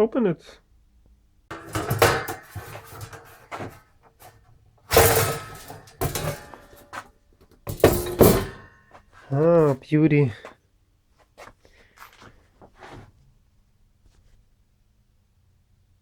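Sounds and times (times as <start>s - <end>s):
enclosure lid rustling and scraping: 1.5s - 7.1s, 7.7s - 9.8s.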